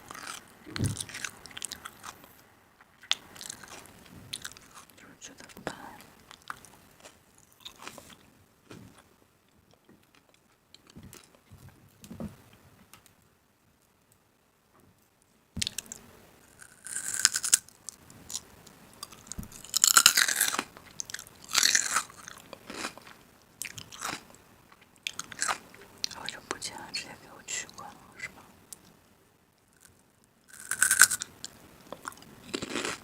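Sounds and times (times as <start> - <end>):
crunchy chewing of crisp food: 0.0 - 9.1, 15.6 - 26.6, 29.7 - 33.0.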